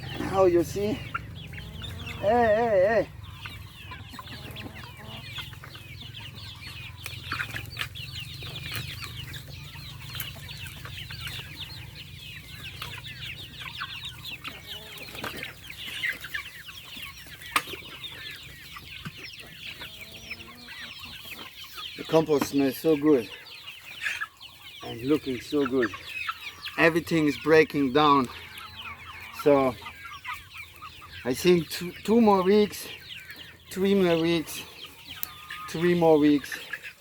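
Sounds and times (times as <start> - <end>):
chickens clucking: 0.0 - 37.0.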